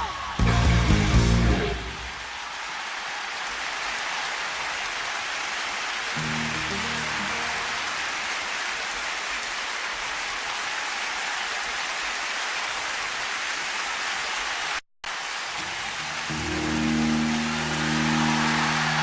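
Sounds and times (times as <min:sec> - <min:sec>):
audience applauding and cheering: 0:00.0 - 0:19.0
band playing a held chord: 0:06.2 - 0:08.0, 0:16.3 - 0:19.0.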